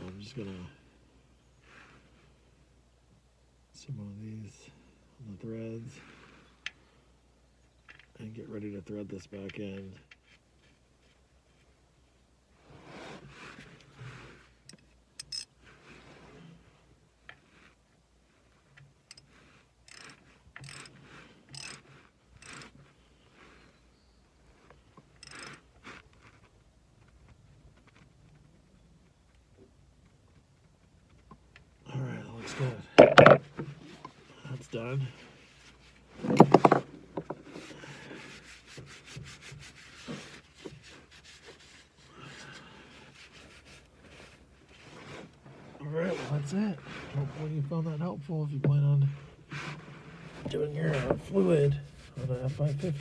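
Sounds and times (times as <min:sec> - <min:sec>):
ratchet clicking: 0:14.7 - 0:15.5, 0:19.9 - 0:21.8, 0:22.4 - 0:22.7, 0:25.2 - 0:25.6
tools scraping and rubbing: 0:15.2 - 0:15.5, 0:19.9 - 0:22.8, 0:25.2 - 0:26.5, 0:32.6 - 0:34.2, 0:35.5 - 0:47.4, 0:49.5 - 0:53.0.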